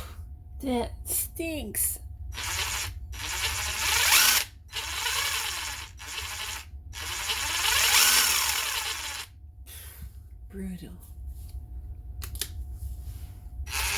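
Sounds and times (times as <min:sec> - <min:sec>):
cordless impact wrench running: 0:02.4 - 0:09.3, 0:13.7 - 0:13.9.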